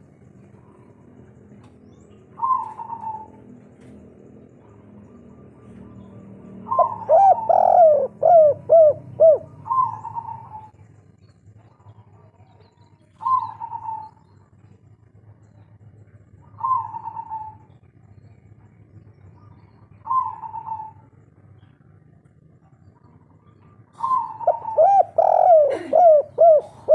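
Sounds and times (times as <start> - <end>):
dove cooing: 2.2 - 3.6, 4.6 - 10.8, 13.2 - 14.3, 16.4 - 17.8, 20.0 - 21.2, 23.2 - 26.9.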